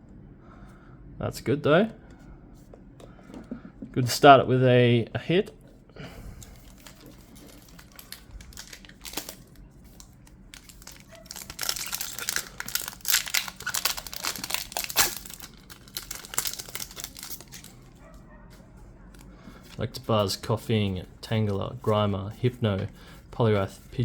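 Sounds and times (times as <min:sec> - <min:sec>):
foil wrapper crinkling and tearing: 0:06.4 - 0:18.0.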